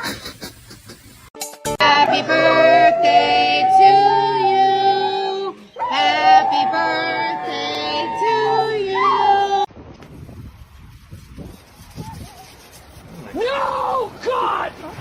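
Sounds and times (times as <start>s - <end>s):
music: 1.4s - 2.2s
person singing: 1.7s - 9.7s.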